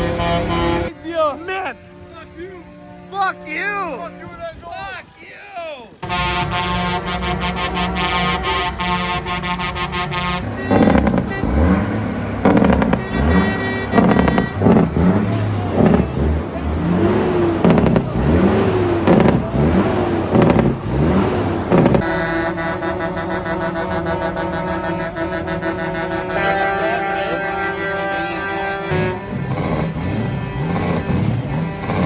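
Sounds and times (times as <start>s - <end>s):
multi-tone air horn: 0.0s - 1.0s, 6.0s - 16.4s, 21.7s - 32.0s
vehicle engine revving: 6.0s - 32.0s.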